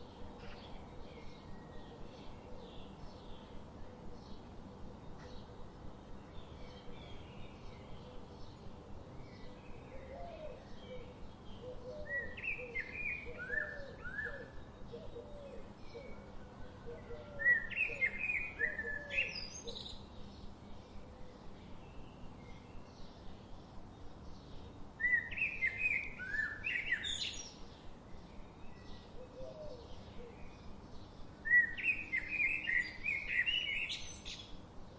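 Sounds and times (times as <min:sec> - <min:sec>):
background hiss: 0:00.0 - 0:34.9
songbirds chirping: 0:00.0 - 0:34.9.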